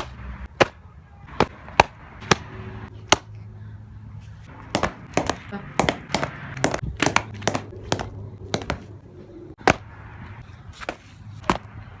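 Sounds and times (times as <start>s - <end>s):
ball popping into leather glove: 4.7s - 8.9s.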